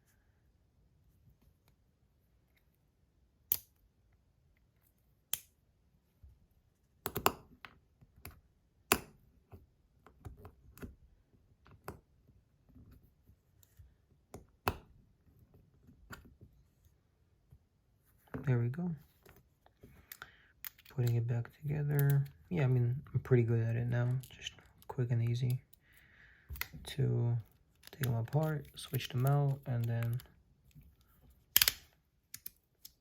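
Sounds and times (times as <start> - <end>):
metal and plastic parts clicking: 31.5 - 33.0.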